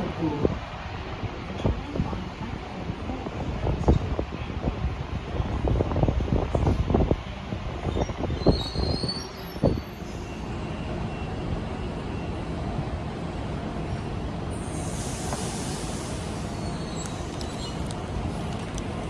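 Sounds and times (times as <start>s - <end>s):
train rumbling: 0.0s - 19.0s
train wheel squeal: 7.9s - 12.4s, 14.6s - 18.8s
train hiss: 14.5s - 19.0s.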